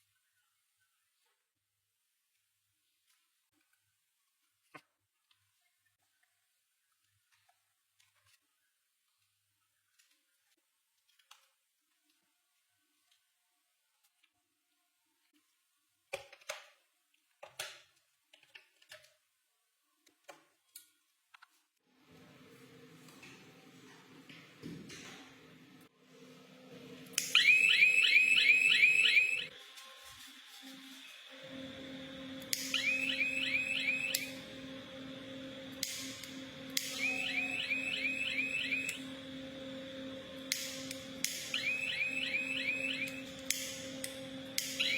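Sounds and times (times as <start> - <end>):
electronic alarm warbling chirps: 27.4 - 29.5, 31.6 - 34.8, 36.8 - 39.3, 41.4 - 43.5, 44.6 - 44.9
steady hum: 31.3 - 44.9.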